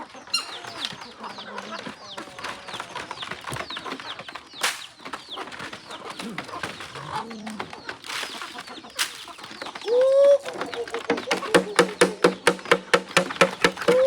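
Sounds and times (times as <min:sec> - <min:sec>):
chickens clucking: 0:00.0 - 0:14.0
chickens peeping: 0:00.0 - 0:14.0.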